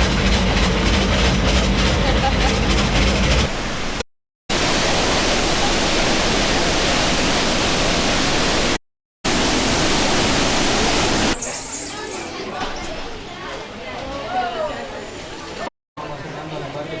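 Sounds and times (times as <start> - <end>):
waterfall roaring: 3.5 - 11.4.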